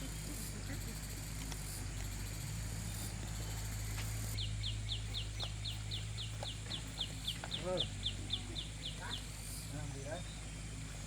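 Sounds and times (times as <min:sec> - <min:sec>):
high insect-like hiss: 0:00.0 - 0:04.4
steady low hum: 0:00.0 - 0:11.0.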